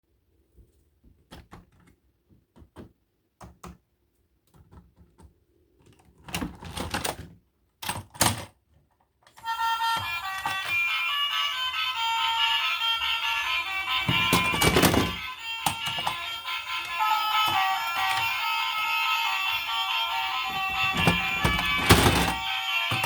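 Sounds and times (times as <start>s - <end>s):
plastic toys clicking and tapping: 4.5s - 10.9s, 13.8s - 18.4s, 20.5s - 23.0s
music: 9.4s - 23.0s
plastic clacks: 14.0s - 16.3s, 20.6s - 23.0s.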